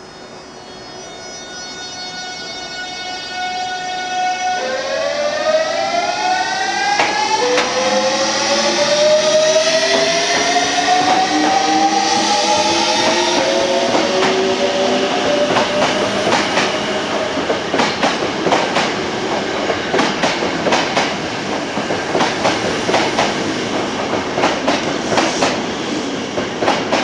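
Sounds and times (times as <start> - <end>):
train traction motor whine: 0.0 - 26.0
train wheels clacking over rail joints: 6.9 - 25.7, 26.3 - 27.0.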